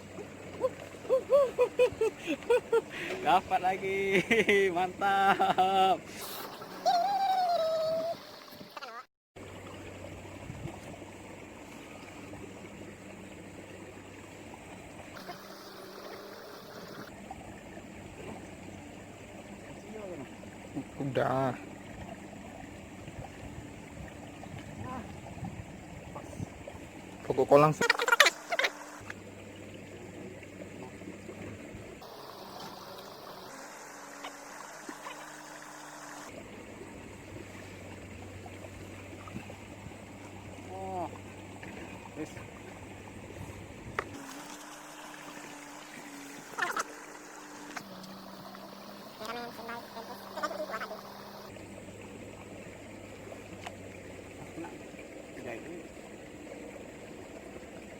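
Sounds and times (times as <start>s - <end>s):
running water: 0.0s - 57.9s
low steady hum: 9.4s - 57.9s.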